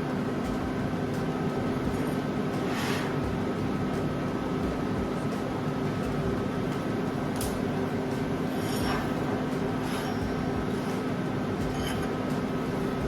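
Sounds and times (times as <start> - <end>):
angle grinder grinding steel: 8.5 - 9.2, 11.7 - 12.2.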